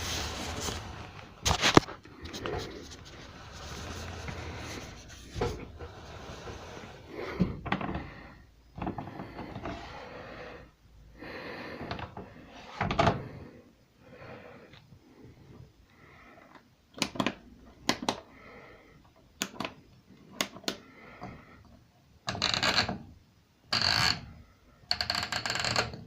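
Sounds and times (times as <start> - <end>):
clunks knocks and scrapes: 0.0 - 10.1.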